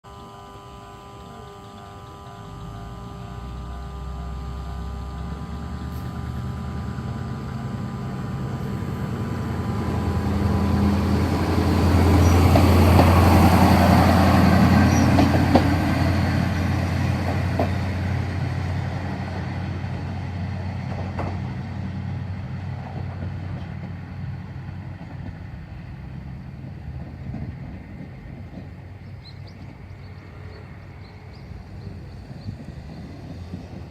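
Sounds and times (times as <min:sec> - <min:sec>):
crossing bell ringing: 0:00.1 - 0:12.7
train rumbling past: 0:00.1 - 0:33.9.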